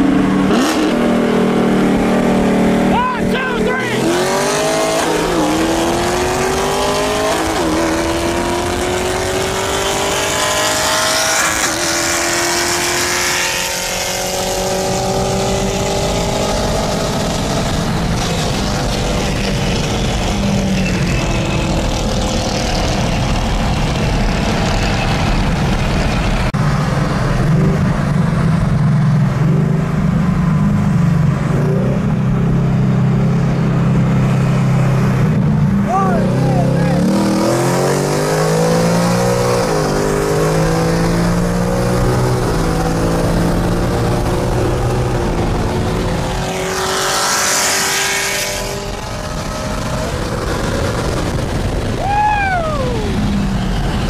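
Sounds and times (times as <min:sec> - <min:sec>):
car accelerating with upshifts: 0:00.0 - 0:03.0, 0:03.6 - 0:54.0.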